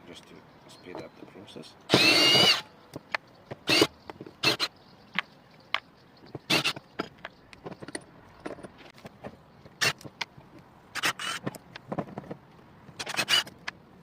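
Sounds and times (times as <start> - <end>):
drill driving out screws: 1.9 - 2.6, 3.6 - 4.7, 6.5 - 6.8, 13.0 - 13.6.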